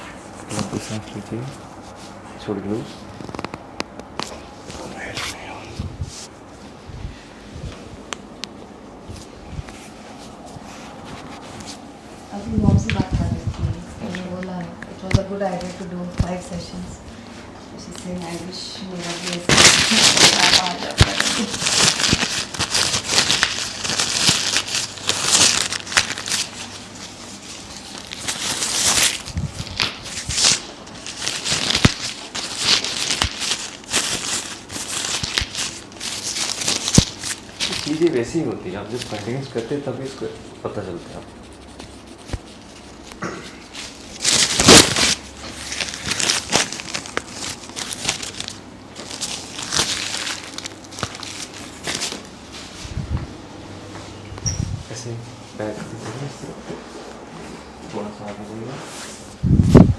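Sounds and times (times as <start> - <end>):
rustling and crinkling: 7.5 - 54.2.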